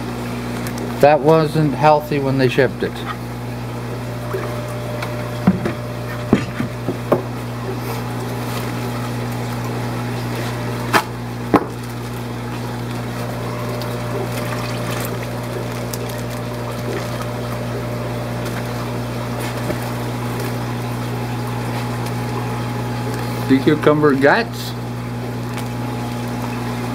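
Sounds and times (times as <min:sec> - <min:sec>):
aquarium pumps humming: 0:00.0 - 0:26.9
water running: 0:00.0 - 0:26.9.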